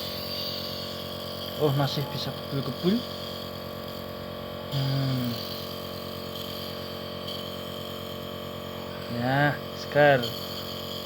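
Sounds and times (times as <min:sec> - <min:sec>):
nebulizer motor humming: 0:00.0 - 0:11.0
person humming mm: 0:04.7 - 0:05.6.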